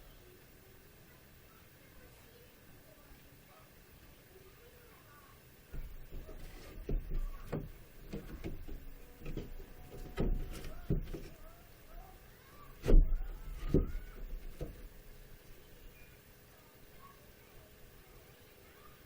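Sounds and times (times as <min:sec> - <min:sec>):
objects knocking and thumping: 0:05.7 - 0:11.6, 0:12.7 - 0:15.6.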